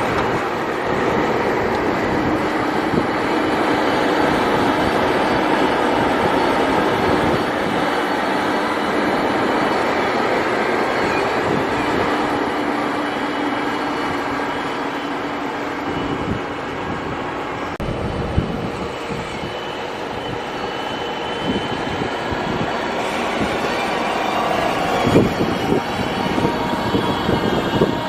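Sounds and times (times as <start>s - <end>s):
tractor and harvester rumbling: 0.0s - 28.0s.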